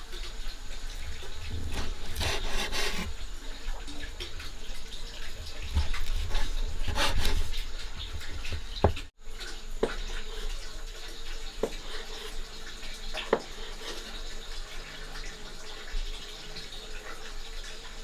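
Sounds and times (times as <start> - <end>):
water running and splashing: 0.0 - 18.0.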